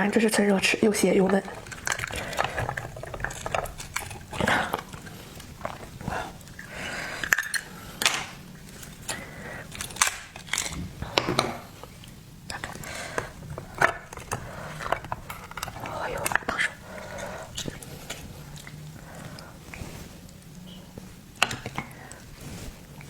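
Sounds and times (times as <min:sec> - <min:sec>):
eating noises: 0:00.6 - 0:23.0
shells and utensils clattering: 0:01.0 - 0:11.7.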